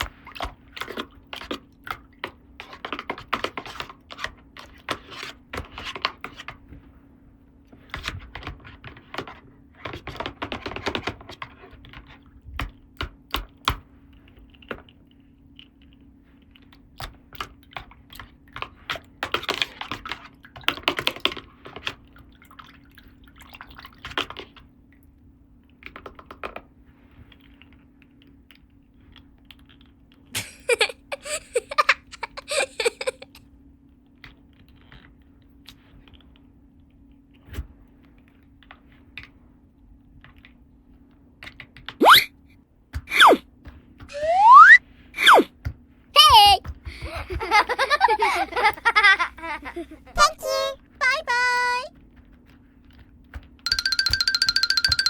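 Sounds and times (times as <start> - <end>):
faint steady hum: 26.9 - 41.4, 42.9 - 53.0
plastic toy pieces clicking: 53.7 - 55.0.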